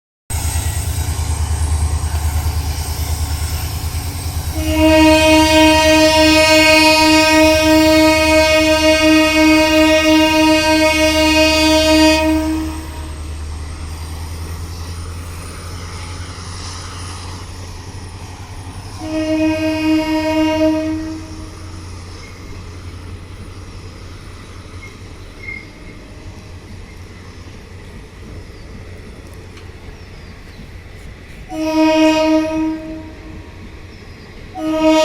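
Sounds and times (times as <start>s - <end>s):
train rumbling: 0.3s - 35.0s
locomotive horn blasts: 4.5s - 13.3s, 19.0s - 21.8s, 31.5s - 33.6s, 34.5s - 35.0s.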